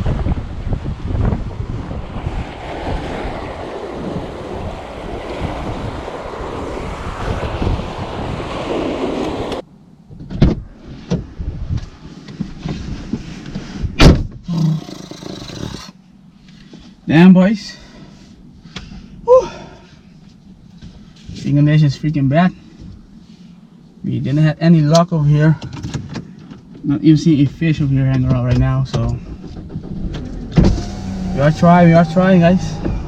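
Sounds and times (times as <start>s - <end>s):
surf rushing: 0.0s - 9.6s, 30.3s - 33.0s
wind buffeting microphone: 0.0s - 14.5s, 27.8s - 33.0s.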